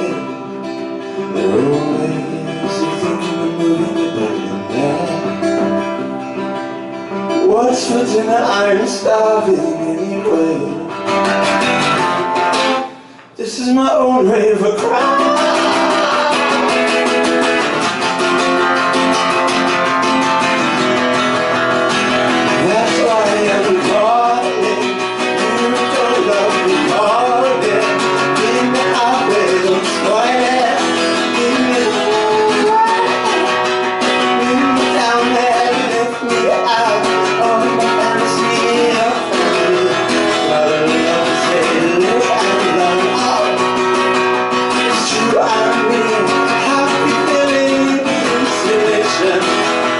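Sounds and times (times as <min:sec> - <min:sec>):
strummed acoustic guitar: 0:00.0 - 0:49.9
sliding melody line: 0:14.8 - 0:44.2.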